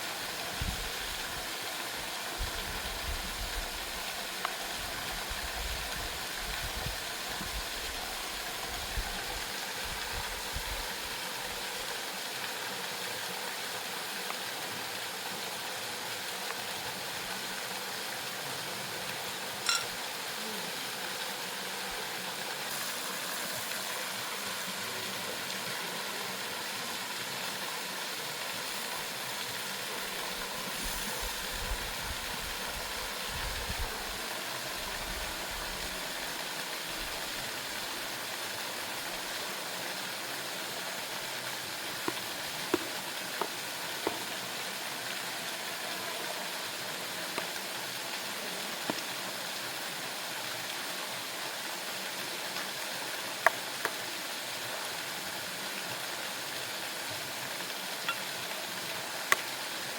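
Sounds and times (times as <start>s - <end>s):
waterfall rushing: 0.0s - 59.9s
sharp clink: 19.7s - 20.0s.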